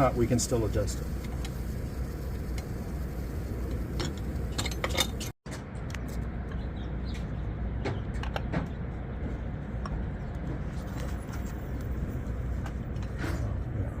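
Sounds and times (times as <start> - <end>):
steady low hum: 0.0 - 14.0
metal parts clinking: 4.0 - 5.3.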